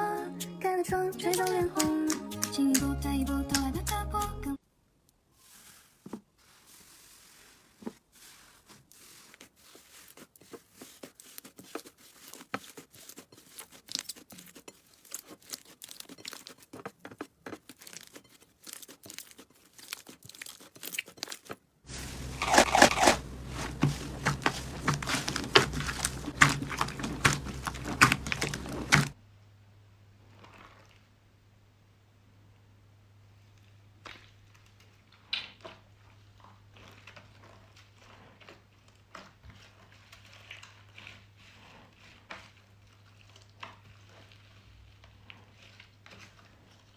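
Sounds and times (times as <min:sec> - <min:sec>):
slime crackling and popping: 0:17.5 - 0:29.2
low steady hum: 0:21.9 - 0:30.2.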